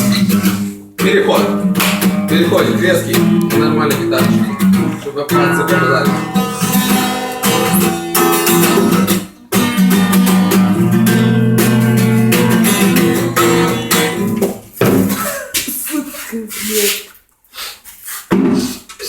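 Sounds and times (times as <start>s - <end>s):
guitar strummed hard: 0.0s - 15.0s.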